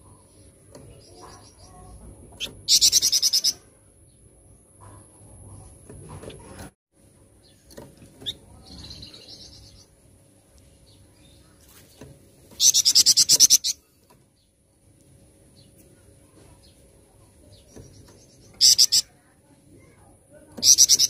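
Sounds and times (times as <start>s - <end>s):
songbird singing: 0.0s - 6.2s, 7.3s - 21.0s.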